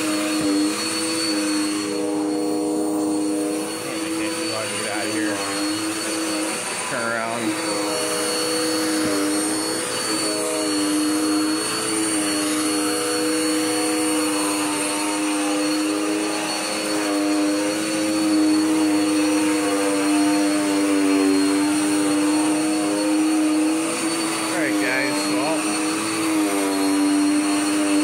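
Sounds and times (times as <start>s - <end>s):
vacuum cleaner running on carpet: 0.0s - 28.0s.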